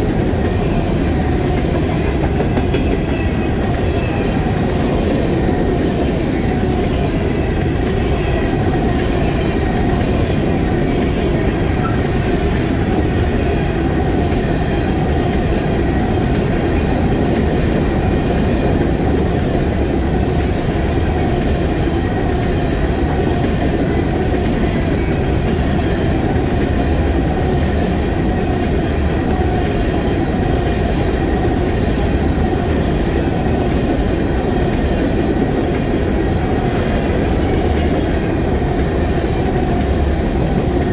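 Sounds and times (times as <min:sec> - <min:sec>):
train wheels rumbling on rails: 0:00.0 - 0:40.9.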